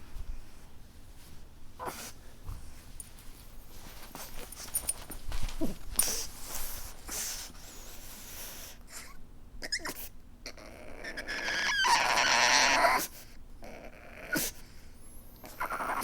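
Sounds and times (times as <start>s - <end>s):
dog wheezy snuffles: 1.8s - 2.8s, 4.0s - 9.1s
dog whimpering: 9.6s - 14.6s, 15.4s - 16.0s
high squeaky dog whines: 11.0s - 13.1s, 15.4s - 16.0s.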